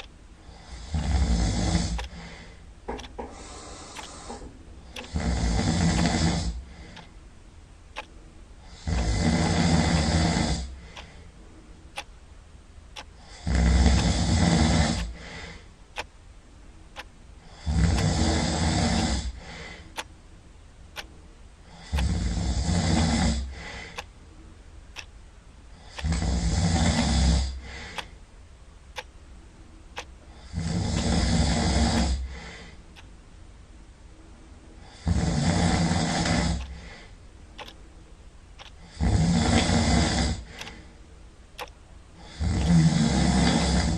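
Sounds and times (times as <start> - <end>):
loud rasping snores: 0.6 - 2.2, 5.0 - 6.6, 8.7 - 10.7, 13.3 - 15.2, 17.5 - 19.4, 21.7 - 23.6, 25.9 - 28.1, 30.4 - 32.4, 34.9 - 36.8, 38.8 - 40.8, 42.2 - 43.9.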